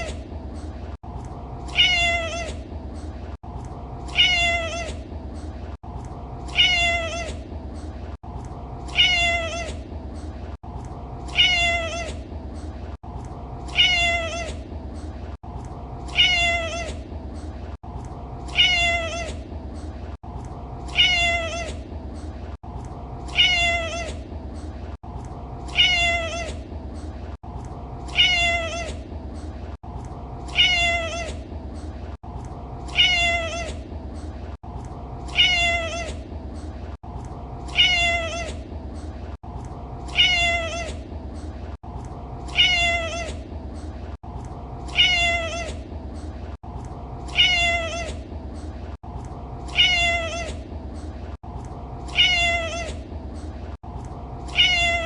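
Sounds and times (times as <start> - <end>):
cat meowing: 1.7 - 2.6, 4.1 - 5.0, 6.5 - 7.4, 8.9 - 9.8, 11.3 - 12.2, 13.7 - 14.6, 16.1 - 17.0, 18.5 - 19.4, 20.9 - 21.8, 23.3 - 24.2, 25.7 - 26.6, 28.1 - 29.0, 30.5 - 31.4, 32.9 - 33.8, 35.3 - 36.2, 37.7 - 38.6, 40.1 - 41.0, 42.5 - 43.4, 44.9 - 45.8, 47.3 - 48.2, 49.7 - 50.6, 52.1 - 53.0, 54.5 - 55.0.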